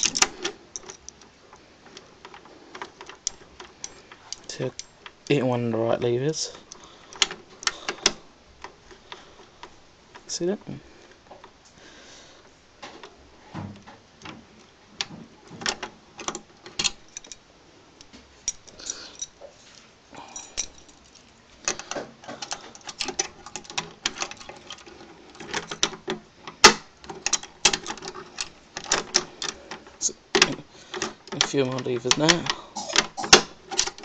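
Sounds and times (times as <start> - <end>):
keys jangling: 0.0 - 1.2, 16.2 - 17.4, 18.5 - 19.4, 20.2 - 25.9.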